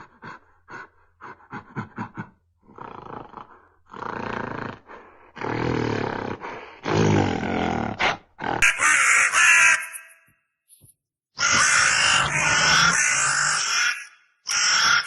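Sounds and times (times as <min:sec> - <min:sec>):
animal calls: 0:08.6 - 0:10.3, 0:11.4 - 0:15.0.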